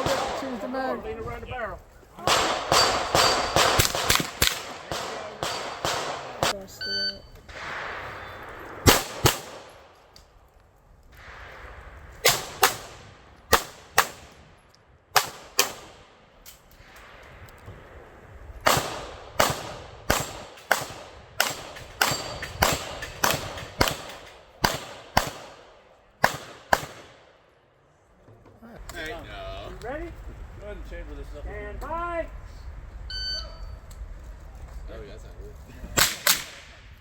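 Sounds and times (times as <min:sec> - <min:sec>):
gunshots: 0:00.0 - 0:00.8, 0:02.2 - 0:06.8, 0:07.5 - 0:10.0, 0:11.2 - 0:14.4, 0:15.1 - 0:16.1, 0:18.6 - 0:27.4, 0:36.0 - 0:36.9.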